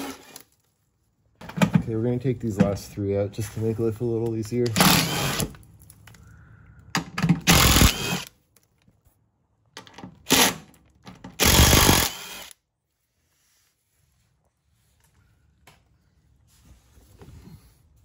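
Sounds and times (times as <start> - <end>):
power tool spinning: 4.8 - 5.6, 7.4 - 8.3, 11.4 - 12.6.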